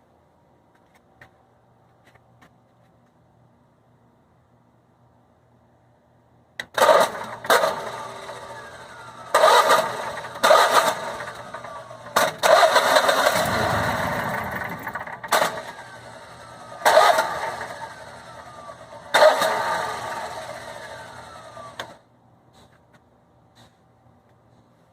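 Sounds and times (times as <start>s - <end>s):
generator engine surging: 6.8s - 22.0s.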